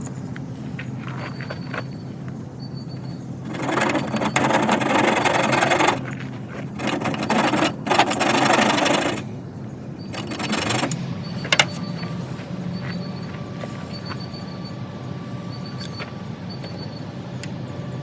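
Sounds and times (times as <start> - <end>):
bow drill grinding on wood: 3.4 - 9.3, 10.1 - 11.8.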